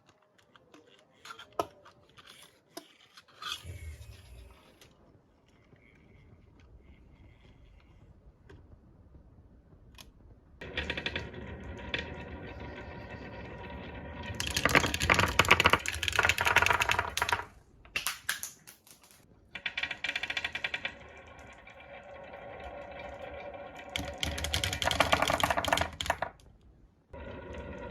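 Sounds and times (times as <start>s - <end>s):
marbles rattling down wooden run: 10.6s - 17.5s, 19.6s - 26.4s.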